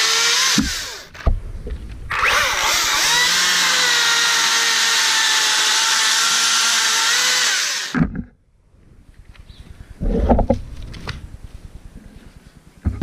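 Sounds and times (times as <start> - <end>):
chainsaw cutting log: 0.0 - 1.2, 2.1 - 8.2.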